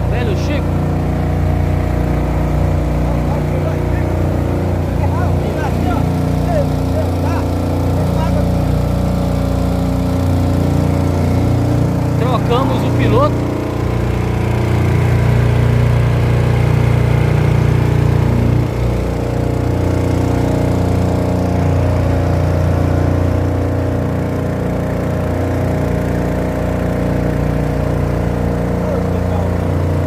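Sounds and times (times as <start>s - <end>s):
outboard motor running: 0.0s - 30.0s.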